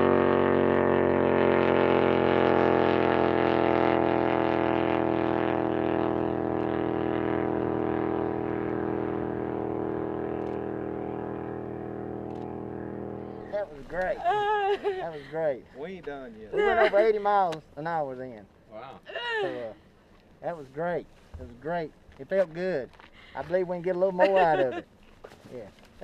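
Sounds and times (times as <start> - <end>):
small engine running flat out: 0.0 - 14.9.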